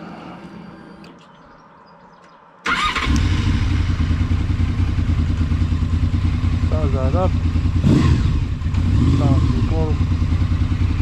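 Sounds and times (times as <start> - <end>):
motorcycle engine starting and idling: 2.6 - 11.0.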